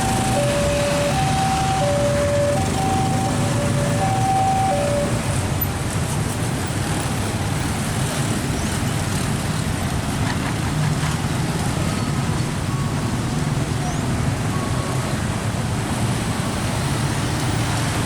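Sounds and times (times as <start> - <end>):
two-note electronic chime: 0.0 - 5.3
low rumble of moving vehicles: 0.0 - 18.0.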